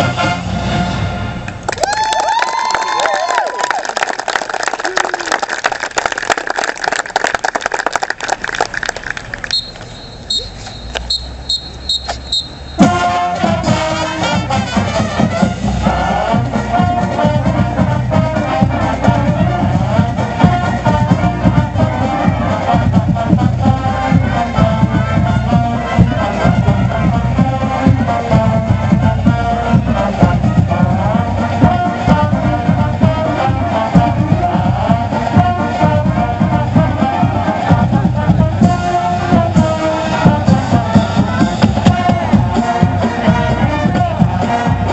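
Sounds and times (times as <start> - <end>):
brass holding notes: 0.0 - 1.4, 9.5 - 44.9
crowd cheering and clapping: 1.5 - 9.9
short high whistle blasts: 9.5 - 12.9
pounding drums: 11.3 - 44.9.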